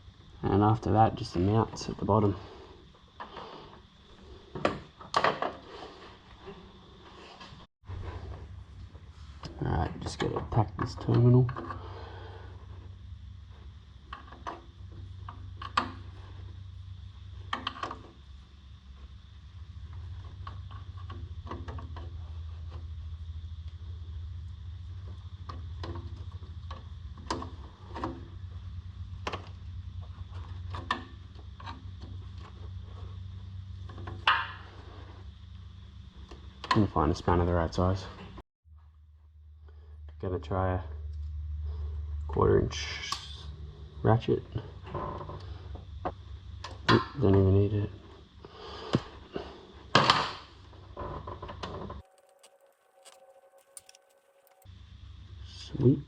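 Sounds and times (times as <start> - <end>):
steady low hum: 0.0 - 56.0
faint steady tone: 50.9 - 56.0
tools clicking and scraping: 52.0 - 54.7.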